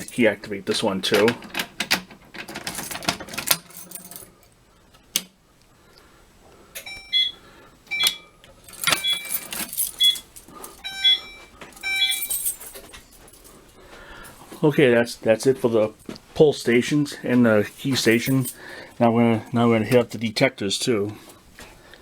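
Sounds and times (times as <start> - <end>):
keys jangling: 1.2 - 4.5, 8.5 - 13.6, 17.9 - 18.6
short alarm tones: 6.8 - 12.4.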